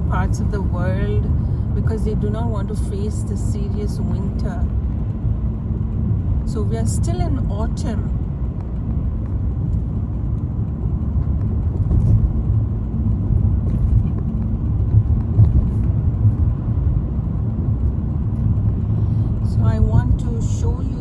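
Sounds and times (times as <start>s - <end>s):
tyre and engine rumble: 0.0s - 21.0s.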